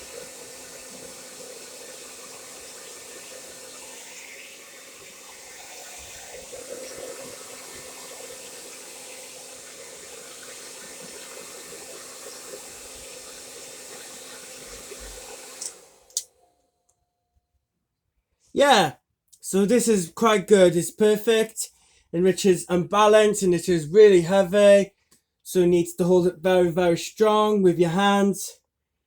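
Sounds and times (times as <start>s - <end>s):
hair dryer running: 0.0s - 16.3s.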